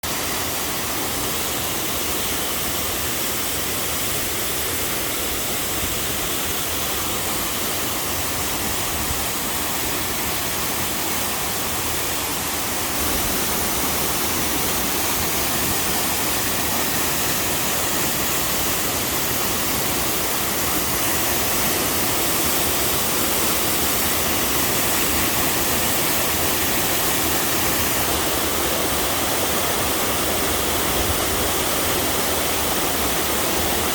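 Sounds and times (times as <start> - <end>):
waterfall pouring: 0.0 - 33.9.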